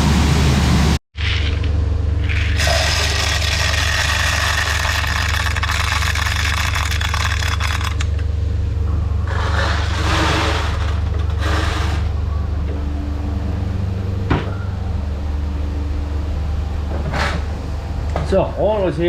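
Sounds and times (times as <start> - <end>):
heavy farm machinery humming: 0.0 - 19.0
rattling scraping noise: 9.2 - 12.2.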